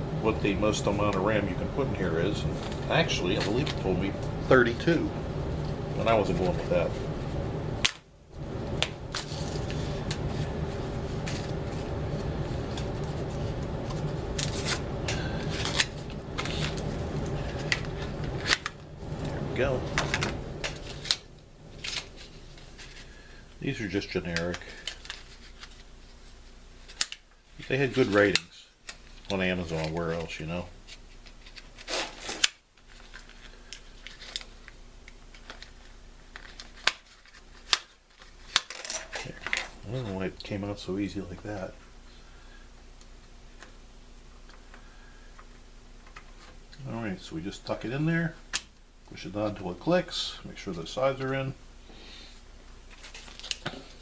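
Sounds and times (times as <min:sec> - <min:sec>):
steady low hum: 0:00.0 - 0:54.0
plastic packaging crackling: 0:08.8 - 0:40.1, 0:52.9 - 0:54.0.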